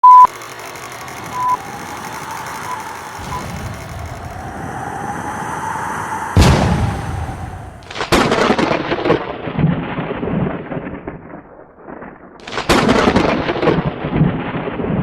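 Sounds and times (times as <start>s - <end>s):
short high electronic beeps: 0.0s - 0.5s
steady background noise: 0.0s - 8.2s
sudden loud boom: 3.2s - 10.3s.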